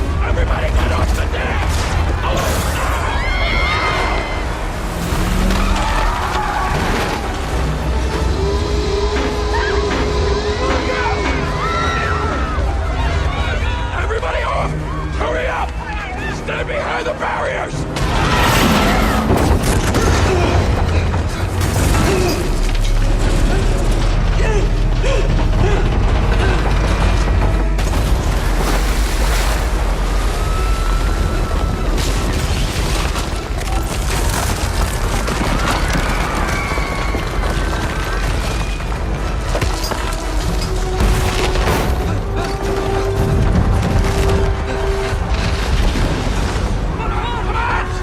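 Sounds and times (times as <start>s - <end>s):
background music: 0.0s - 48.0s
crashing and cracking impacts: 0.9s - 8.0s, 18.0s - 47.3s
deep continuous rumble: 17.6s - 48.0s.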